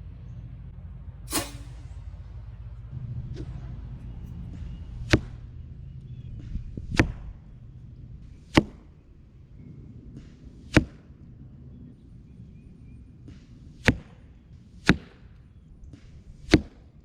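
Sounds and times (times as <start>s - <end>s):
bow shot crack: 1.3s - 1.9s
wind rumble on microphone: 2.0s - 17.0s.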